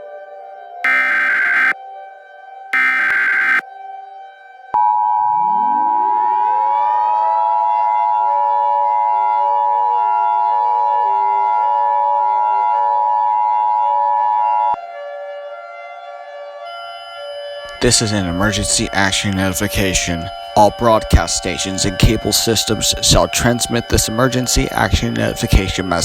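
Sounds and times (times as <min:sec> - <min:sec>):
civil defense siren wailing: 0:00.0 - 0:26.0
two-tone attention signal: 0:00.8 - 0:01.8, 0:02.8 - 0:03.6.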